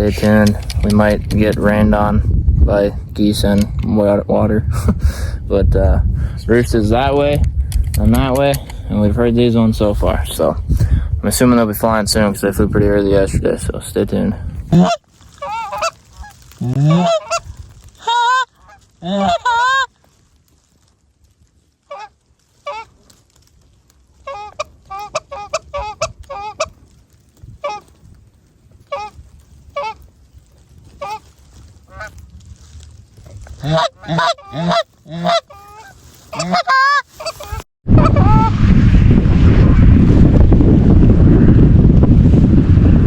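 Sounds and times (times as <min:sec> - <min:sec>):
geese honking: 0:14.7 - 0:19.9, 0:21.9 - 0:22.9, 0:24.2 - 0:26.8, 0:27.6 - 0:27.9, 0:28.9 - 0:30.1, 0:31.0 - 0:31.3, 0:31.9 - 0:32.2, 0:33.5 - 0:38.5.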